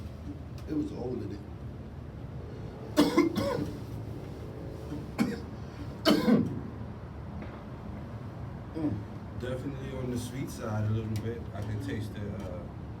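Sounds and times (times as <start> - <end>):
man coughing: 3.0 - 3.8, 5.2 - 6.6.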